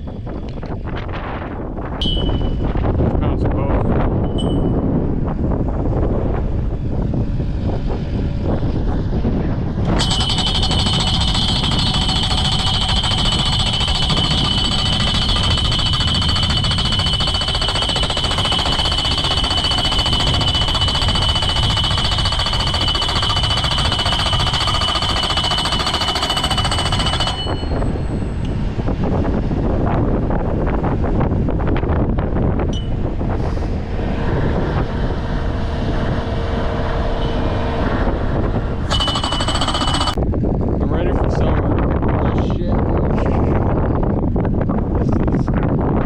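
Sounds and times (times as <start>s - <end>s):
wind buffeting microphone: 0.0s - 46.0s
power tool whining: 9.8s - 28.1s, 38.8s - 40.2s.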